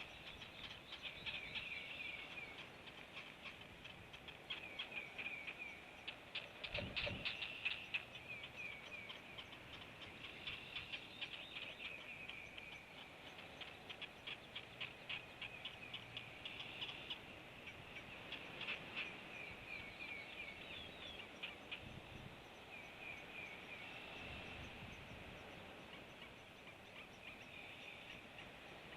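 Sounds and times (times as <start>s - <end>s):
bird chirping: 0.0s - 28.9s
faint background hiss: 0.0s - 28.9s.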